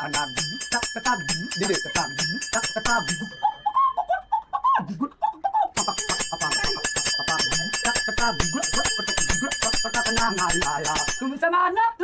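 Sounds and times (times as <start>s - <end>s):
metallic ringing rattle: 0.0s - 3.8s, 5.8s - 11.4s.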